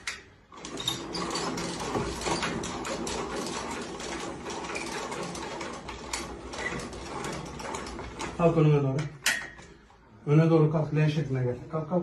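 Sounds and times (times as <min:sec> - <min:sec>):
mechanical clicking and rattling: 0:00.0 - 0:08.6.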